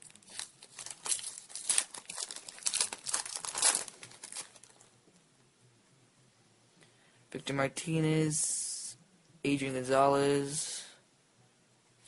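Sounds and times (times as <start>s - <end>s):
foil wrapper crinkling and tearing: 0.0s - 4.9s.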